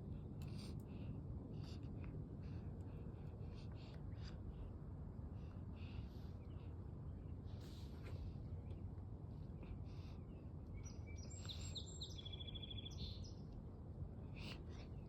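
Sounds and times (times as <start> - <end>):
low background rumble: 0.0 - 15.0
small bird singing with trill: 10.7 - 13.4.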